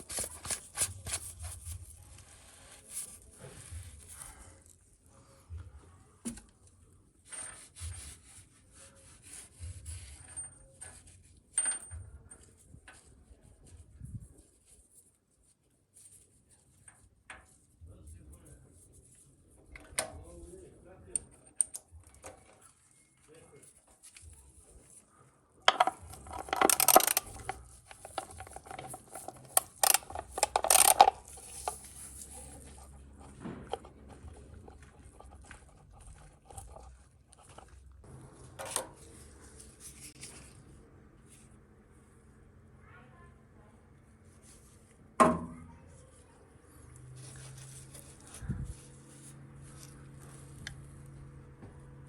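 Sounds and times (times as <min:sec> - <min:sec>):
handling and rubbing noises: 0:00.0 - 0:42.4, 0:44.0 - 0:52.0
metal tools clinking and rattling: 0:25.7 - 0:32.9.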